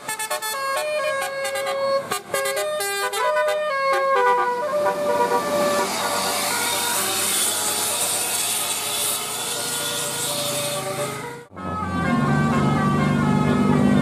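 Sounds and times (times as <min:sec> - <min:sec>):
bus passing with rushing sound: 0:00.0 - 0:14.0.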